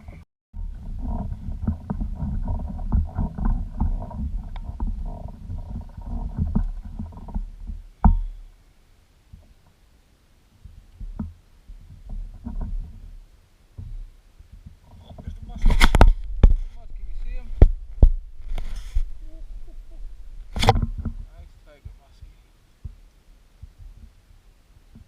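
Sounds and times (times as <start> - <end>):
low rumbling: 0.0 - 9.6, 10.6 - 24.5
heavy thump: 7.6 - 8.4, 13.8 - 22.0
knocks and clatters: 10.6 - 13.1, 13.8 - 22.0.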